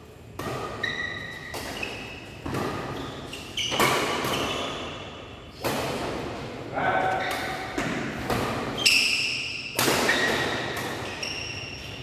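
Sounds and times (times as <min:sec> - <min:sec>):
racket striking shuttlecock: 0:00.4 - 0:03.0, 0:07.3 - 0:11.1.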